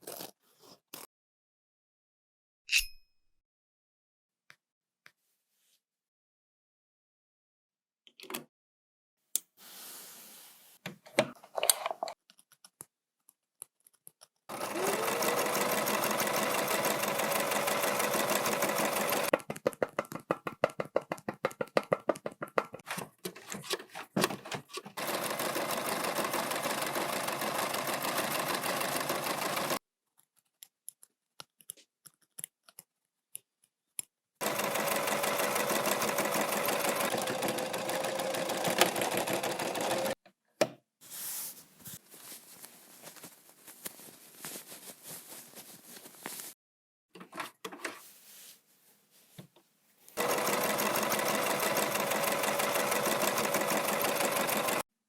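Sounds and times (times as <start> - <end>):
sewing machine stitching: 14.5 - 19.5, 22.8 - 29.8, 34.4 - 40.2, 50.2 - 54.9.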